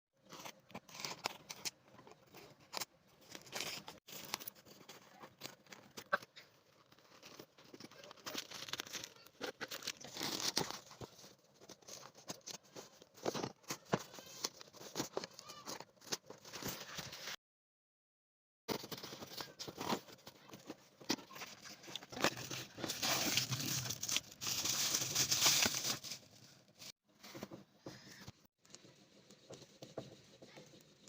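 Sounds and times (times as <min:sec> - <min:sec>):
packaging tearing and crinkling: 0:07.0 - 0:12.5, 0:21.3 - 0:26.4.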